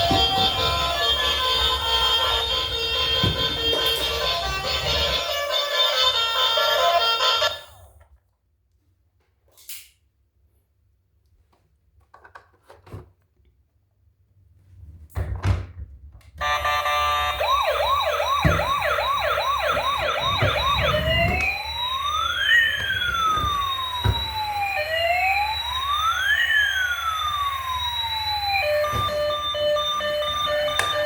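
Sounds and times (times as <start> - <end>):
toy electronic siren: 0.0 - 7.8, 16.4 - 31.0.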